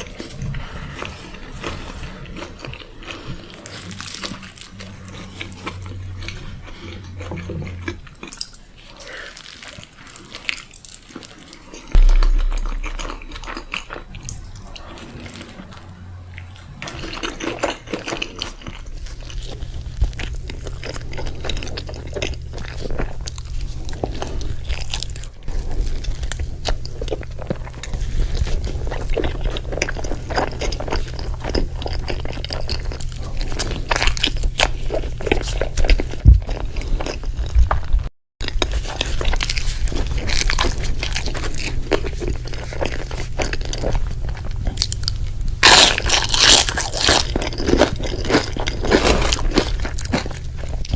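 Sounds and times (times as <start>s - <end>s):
chewing crunchy burger: 0.0s - 50.9s
steady low hum: 11.9s - 38.0s, 38.6s - 50.9s.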